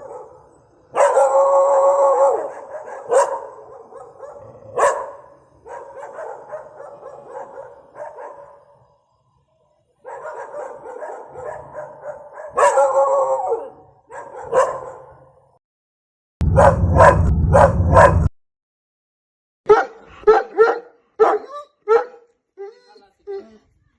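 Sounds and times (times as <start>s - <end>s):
dogs barking: 0.0s - 8.8s, 10.0s - 15.4s, 16.4s - 18.3s, 19.7s - 22.3s
loud low rumble: 16.4s - 18.3s.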